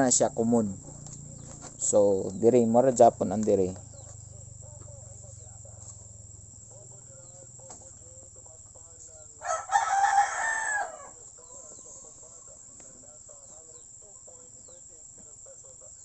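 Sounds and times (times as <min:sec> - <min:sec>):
rooster crowing: 0:09.4 - 0:12.8.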